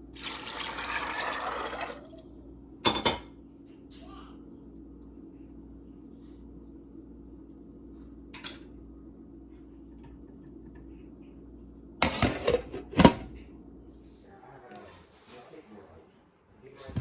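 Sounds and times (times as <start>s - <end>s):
low steady hum: 0.0s - 16.8s
metal kitchenware clattering: 2.9s - 3.3s.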